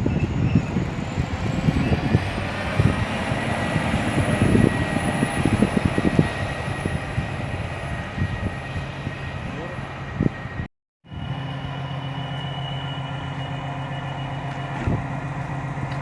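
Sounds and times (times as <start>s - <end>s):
wind buffeting microphone: 0.0s - 11.4s, 14.8s - 16.0s
diesel train engine roar: 0.0s - 16.0s
high whines: 0.2s - 15.6s.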